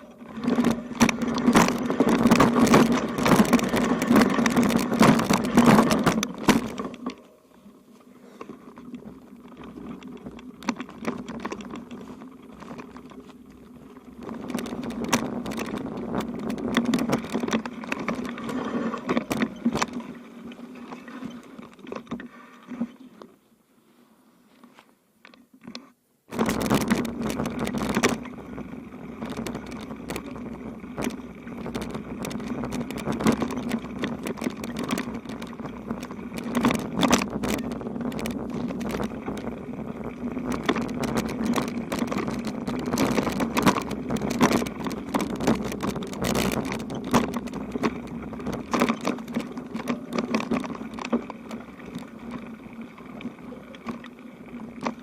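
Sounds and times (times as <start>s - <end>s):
bicycle rattles and knocks: 0.0s - 23.4s, 24.6s - 55.0s
bicycle rolling on rough road: 0.0s - 55.0s.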